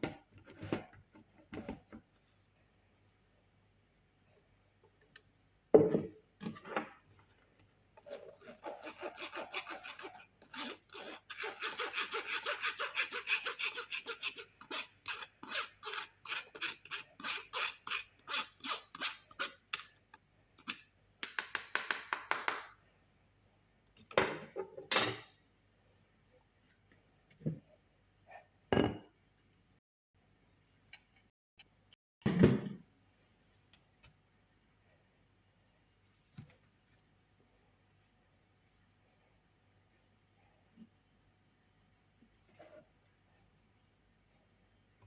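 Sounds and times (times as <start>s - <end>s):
kitchen utensil rasping scrapes: 8.0s - 19.6s.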